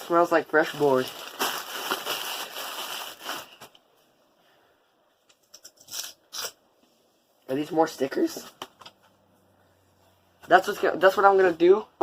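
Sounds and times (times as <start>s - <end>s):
packaging rustling: 0.0s - 3.8s.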